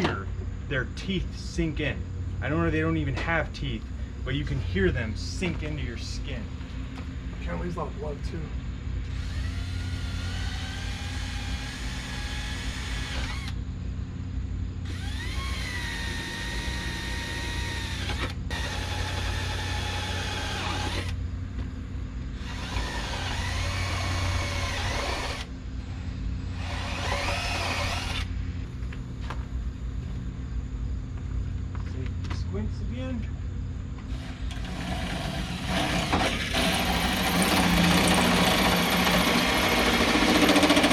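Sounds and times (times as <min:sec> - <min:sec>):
steady low hum: 0:00.0 - 0:40.9
cordless drill whining: 0:09.0 - 0:13.6, 0:14.9 - 0:21.2, 0:22.4 - 0:25.5, 0:26.5 - 0:28.3, 0:34.1 - 0:40.9.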